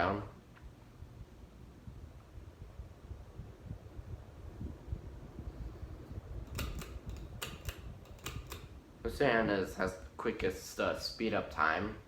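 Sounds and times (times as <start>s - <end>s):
ceiling fan spinning down: 0.0s - 12.0s.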